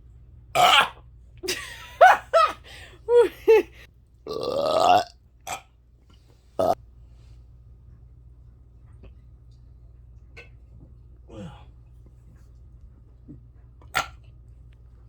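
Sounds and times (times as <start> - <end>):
person burping: 0.6 - 1.0, 4.3 - 5.6.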